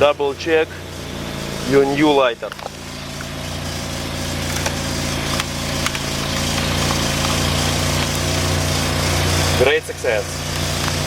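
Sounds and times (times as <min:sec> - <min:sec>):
air conditioning running: 0:00.0 - 0:11.0
car engine idling: 0:00.0 - 0:11.0.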